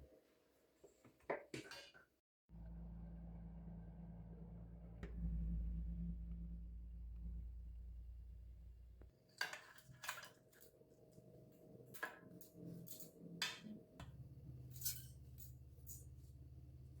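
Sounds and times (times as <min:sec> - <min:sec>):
low steady hum: 0:02.5 - 0:09.1
kitchen items clicking and knocking: 0:14.6 - 0:16.2.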